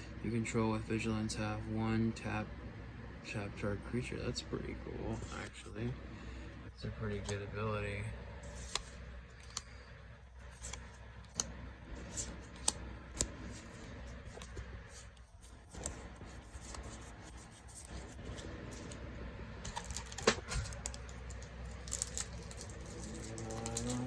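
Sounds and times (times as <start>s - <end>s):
trading cards being flipped through: 8.4s - 9.7s, 10.4s - 24.0s.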